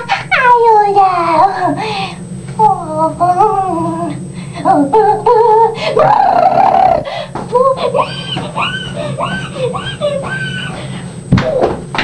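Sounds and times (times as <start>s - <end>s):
woman squealing and vocalizing: 5.4s - 7.2s.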